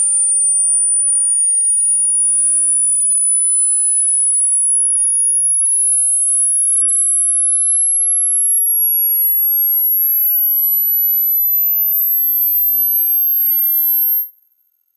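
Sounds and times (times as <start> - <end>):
high-pitched sine tone rising: 10.2 - 14.3.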